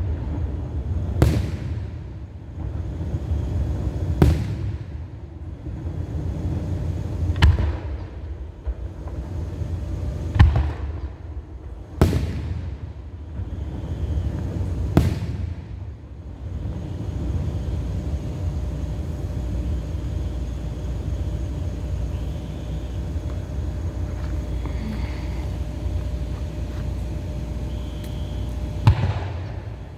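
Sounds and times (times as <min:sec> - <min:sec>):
firework shells bursting: 0:06.2 - 0:29.9
low rumble: 0:17.2 - 0:29.9.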